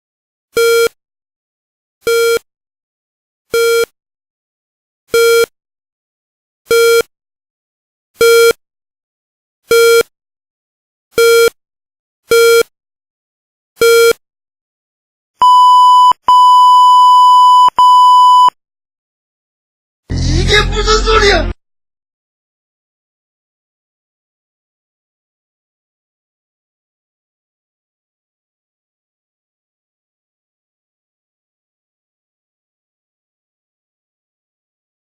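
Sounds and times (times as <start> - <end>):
short low electronic beeps: 15.4 - 18.5.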